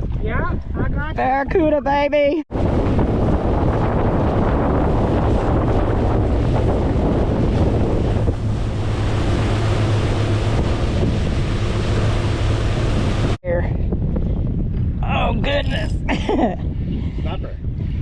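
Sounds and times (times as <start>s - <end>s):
wind buffeting microphone: 0.0s - 18.0s
boat engine humming: 2.5s - 13.6s.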